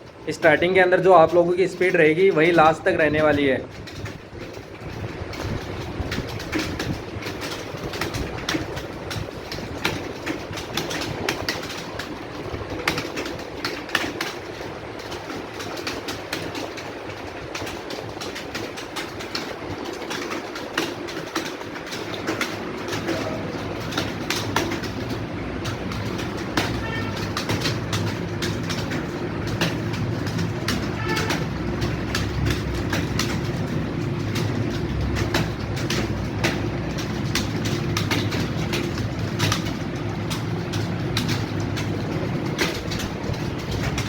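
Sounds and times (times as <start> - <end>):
computer keyboards clattering: 0.0 - 44.0.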